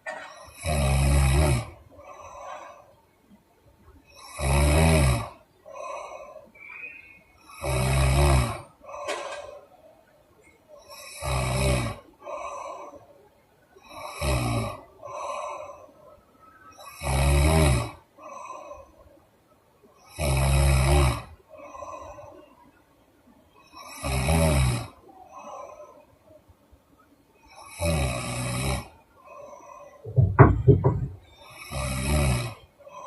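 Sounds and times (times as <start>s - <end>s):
woman snoring loudly: 0.5s - 1.8s, 4.2s - 5.4s, 7.5s - 8.7s, 10.9s - 12.0s, 13.8s - 14.8s, 16.8s - 18.0s, 20.1s - 21.3s, 23.8s - 25.0s, 27.6s - 28.9s, 31.5s - 32.6s
soft breath: 1.9s - 3.1s, 5.6s - 7.4s, 12.2s - 14.0s, 15.0s - 16.7s, 18.2s - 19.2s, 21.5s - 22.8s, 25.1s - 26.5s, 29.2s - 30.5s.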